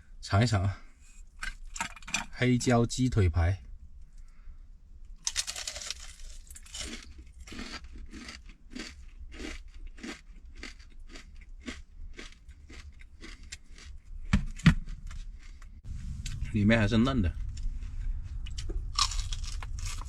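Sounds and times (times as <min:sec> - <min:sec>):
crunching and chewing: 0:05.1 - 0:15.8, 0:18.5 - 0:20.0.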